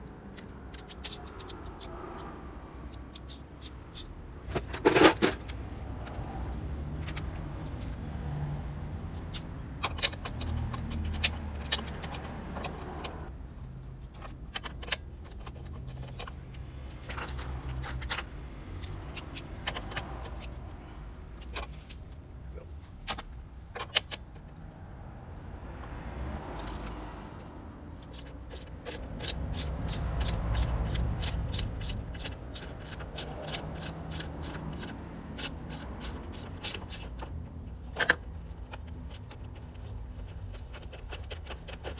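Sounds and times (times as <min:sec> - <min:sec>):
metal tools clinking: 0:02.9 - 0:05.5, 0:09.2 - 0:20.6, 0:26.5 - 0:41.9.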